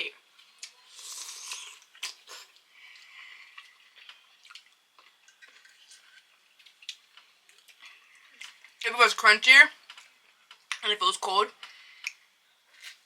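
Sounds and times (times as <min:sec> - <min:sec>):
person chewing pickle: 0:00.4 - 0:08.8, 0:11.6 - 0:13.0.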